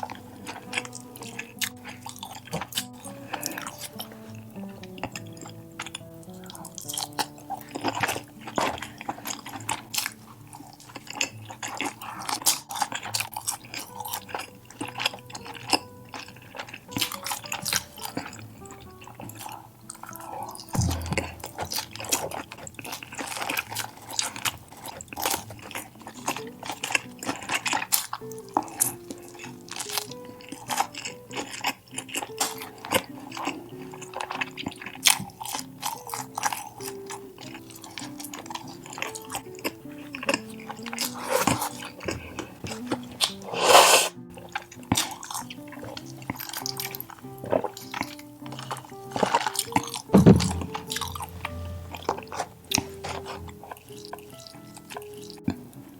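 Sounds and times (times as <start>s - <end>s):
soft background music: 0.0s - 55.9s
wet chewing and mouth clicks: 0.0s - 55.9s
low thump: 20.8s - 21.8s, 50.2s - 52.1s.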